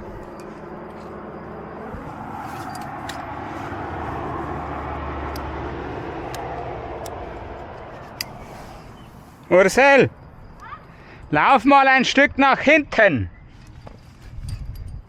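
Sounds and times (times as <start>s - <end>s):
vehicle driving past: 0.0s - 10.4s
light clicks: 6.2s - 8.4s.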